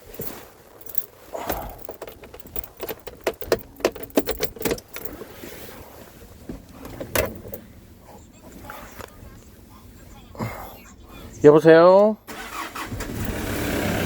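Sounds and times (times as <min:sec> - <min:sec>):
sharp clicks and light knocks: 0:00.2 - 0:05.2.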